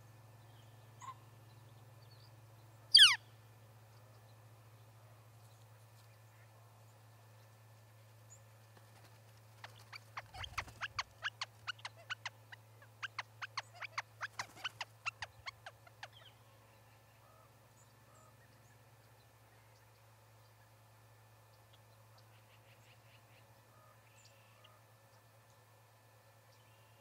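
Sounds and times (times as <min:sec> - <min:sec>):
small bird chipping: 0:02.9 - 0:03.3, 0:09.0 - 0:16.4.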